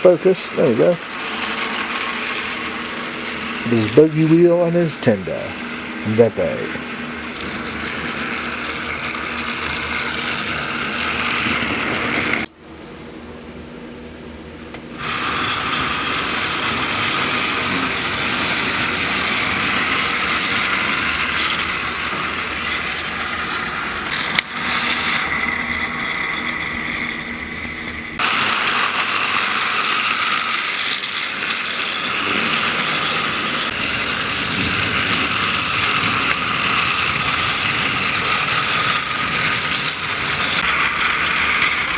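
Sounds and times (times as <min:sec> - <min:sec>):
toy train motor whirring: 0:00.0 - 0:12.5, 0:15.0 - 0:41.9
gears rattling: 0:15.0 - 0:27.0, 0:28.2 - 0:41.9.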